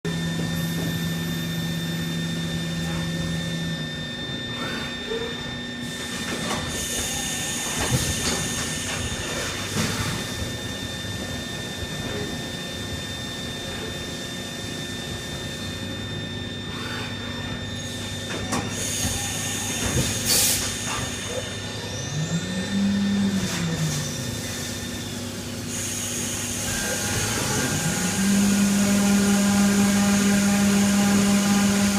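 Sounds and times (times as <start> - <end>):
milling machine hum and whine: 0.0 - 31.9.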